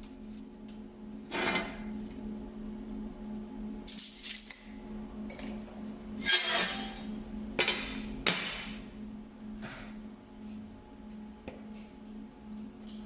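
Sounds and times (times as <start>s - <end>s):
low hum: 4.5s - 13.0s.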